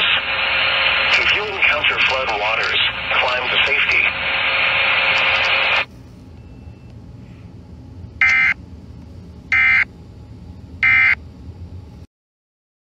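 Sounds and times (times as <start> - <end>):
radio hiss: 0.0 - 5.9
screechy data tone bursts: 8.2 - 8.6.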